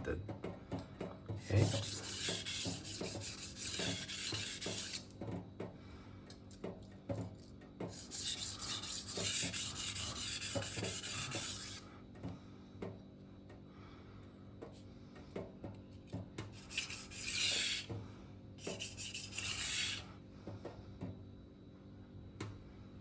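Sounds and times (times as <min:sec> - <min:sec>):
knife scraping on whetstone: 0:01.4 - 0:05.1, 0:07.9 - 0:11.8, 0:16.6 - 0:17.9, 0:18.6 - 0:20.1.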